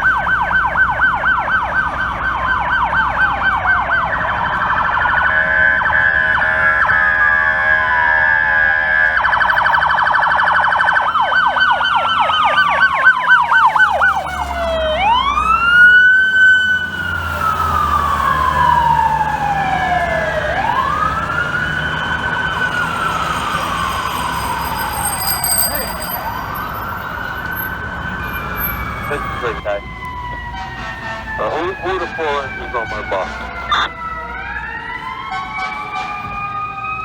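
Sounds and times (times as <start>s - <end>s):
fire truck siren wailing: 0.0s - 37.0s
siren yelp warbling: 0.0s - 37.0s.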